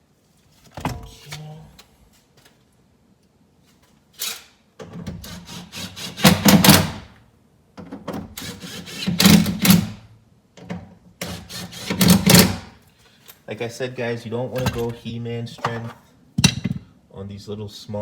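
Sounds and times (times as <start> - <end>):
impact driver rattling: 11.9 - 12.7.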